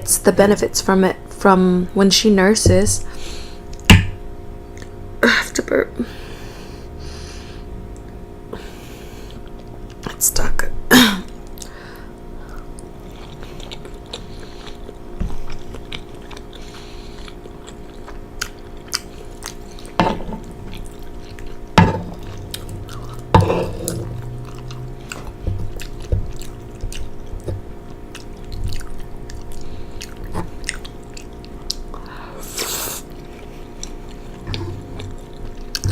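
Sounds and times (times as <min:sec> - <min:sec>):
person chewing: 0:12.4 - 0:35.9.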